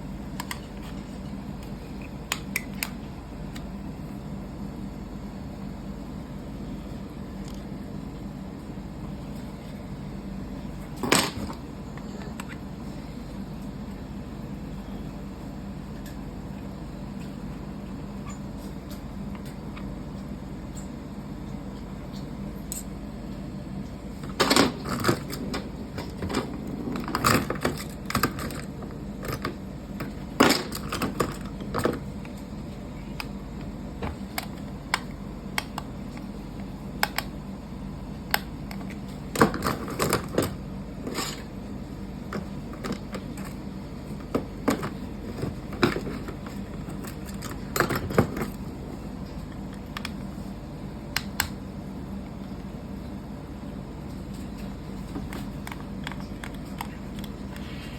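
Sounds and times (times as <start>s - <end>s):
steady low hum: 0.0s - 57.9s
plastic parts clicking: 55.1s - 57.7s.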